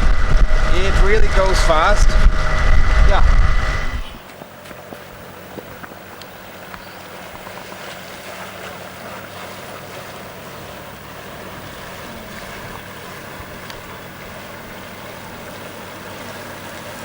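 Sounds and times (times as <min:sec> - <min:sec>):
wind noise on microphone: 0:00.0 - 0:04.2
electric outboard motor humming: 0:00.0 - 0:17.0
water rushing along hull: 0:00.0 - 0:17.0.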